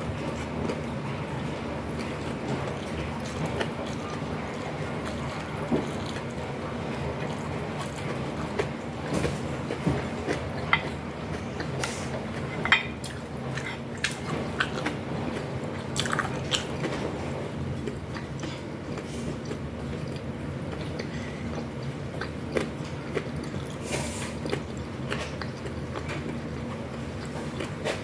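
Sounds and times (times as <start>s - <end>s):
steady low hum: 0.0s - 28.0s
chewing and biting food: 0.1s - 28.0s.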